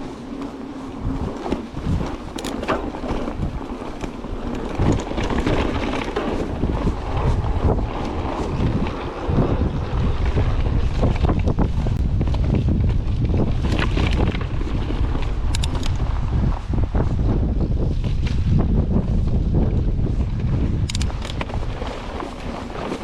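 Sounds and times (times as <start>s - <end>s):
mountain bike rumbling on rocks: 0.0s - 23.0s
wind buffeting microphone: 0.0s - 23.0s
sharp clicks and rattles: 1.3s - 6.5s, 11.1s - 16.0s, 20.8s - 21.6s.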